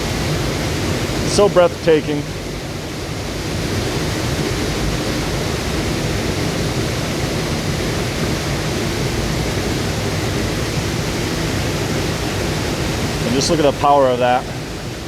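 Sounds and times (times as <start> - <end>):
waterfall roaring: 0.0 - 15.0.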